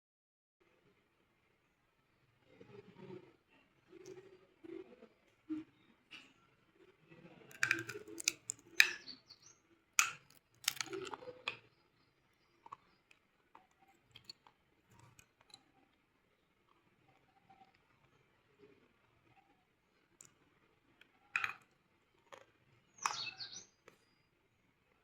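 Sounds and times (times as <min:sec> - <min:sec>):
slate pencils crunching: 0:07.5 - 0:09.0, 0:10.0 - 0:11.5.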